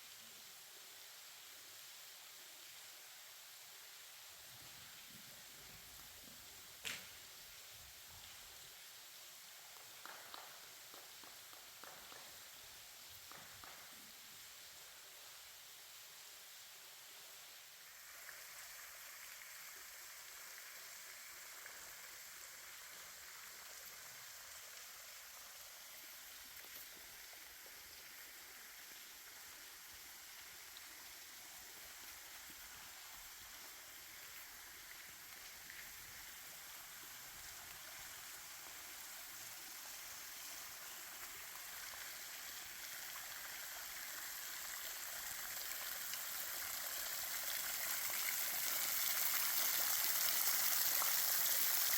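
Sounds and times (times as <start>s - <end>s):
creek water running: 0.0s - 51.9s.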